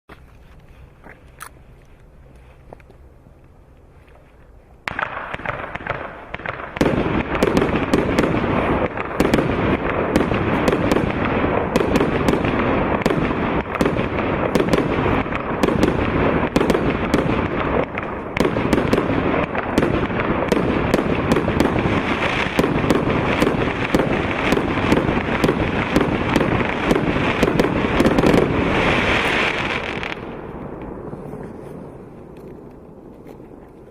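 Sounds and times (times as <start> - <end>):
fireworks launching and bursting: 4.8 - 33.6
firework hiss: 5.0 - 30.2.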